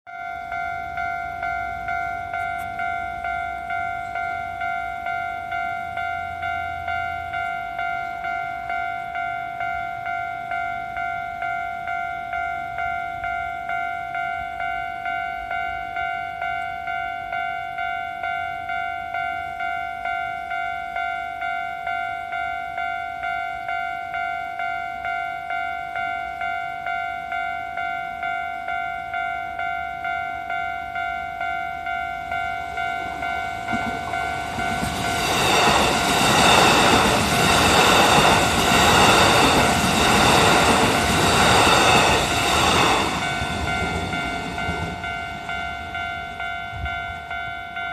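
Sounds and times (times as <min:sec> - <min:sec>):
level crossing warning bell: 0:00.1 - 0:47.9
train wheels clattering: 0:32.7 - 0:45.9.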